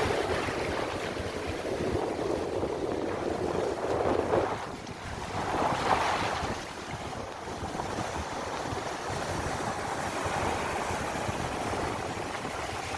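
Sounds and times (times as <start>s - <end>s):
rushing water: 0.0s - 12.9s
wind buffeting microphone: 0.0s - 12.9s.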